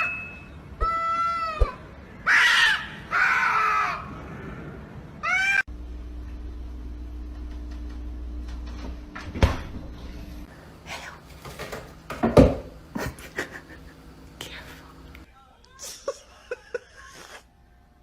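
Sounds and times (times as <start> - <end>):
low steady hum: 4.1 - 18.0.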